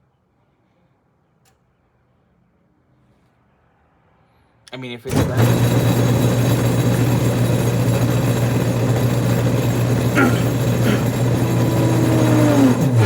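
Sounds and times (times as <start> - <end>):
alternator tester humming: 5.1 - 13.0.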